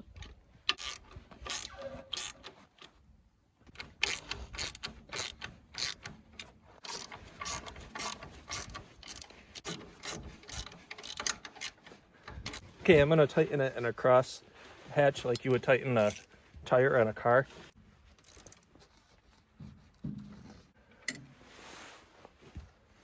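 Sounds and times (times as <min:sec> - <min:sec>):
ratchet wrench clicking: 0:00.2 - 0:02.5, 0:04.0 - 0:06.2, 0:06.8 - 0:11.8, 0:12.4 - 0:12.6.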